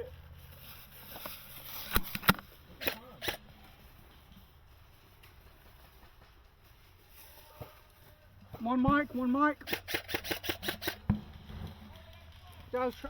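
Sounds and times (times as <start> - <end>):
airsoft gun snaps: 9.6 - 11.1.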